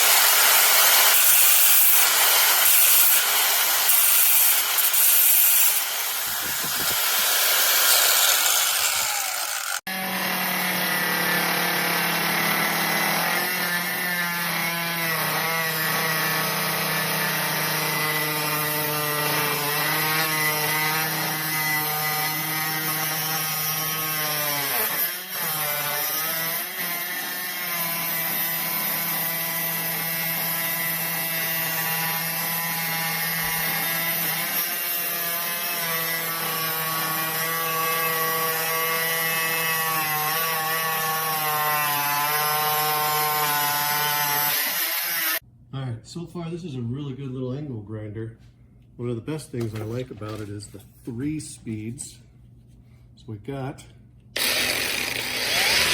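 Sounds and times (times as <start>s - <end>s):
grinder grinding hiss: 0.0s - 9.9s, 54.4s - 55.9s
grinder motor whine: 0.0s - 14.6s, 54.4s - 55.9s.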